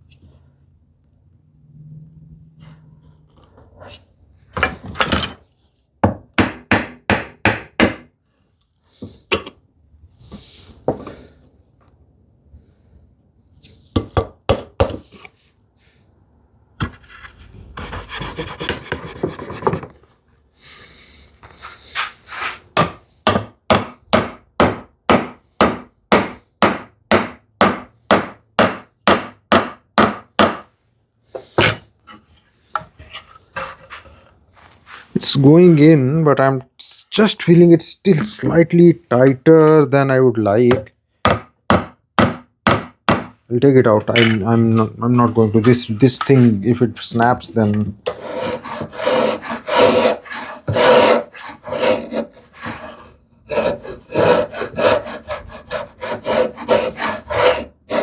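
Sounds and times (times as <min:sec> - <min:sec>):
scraping on wood: 0:16.8 - 0:20.1, 0:31.4 - 0:35.9, 0:44.0 - 0:58.0.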